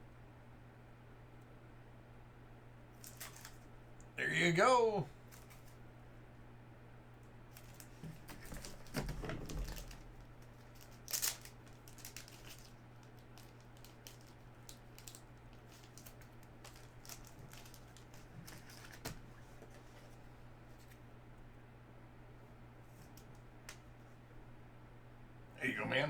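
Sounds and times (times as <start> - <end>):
cards clicking and rustling: 3.0 - 3.6, 5.2 - 5.8, 7.5 - 19.9
plastic crinkle: 3.0 - 3.6, 7.5 - 19.8.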